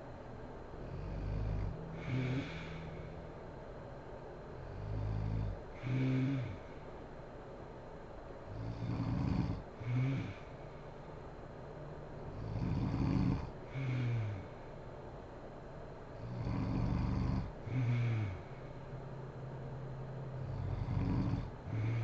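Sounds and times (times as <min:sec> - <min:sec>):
woman snoring heavily: 0:00.8 - 0:03.2, 0:04.6 - 0:06.8, 0:08.5 - 0:10.7, 0:12.3 - 0:14.6, 0:16.2 - 0:18.7, 0:20.4 - 0:22.0.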